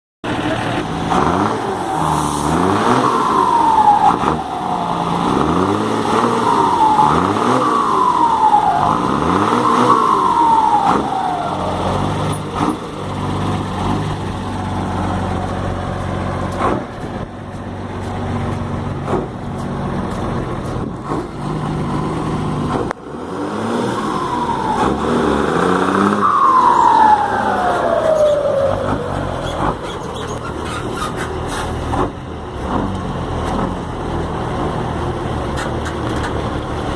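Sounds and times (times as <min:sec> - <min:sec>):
diesel engine idling: 0:00.3 - 0:23.0
truck engine revving: 0:00.3 - 0:36.9
turbo whistle falling in pitch: 0:25.9 - 0:29.6.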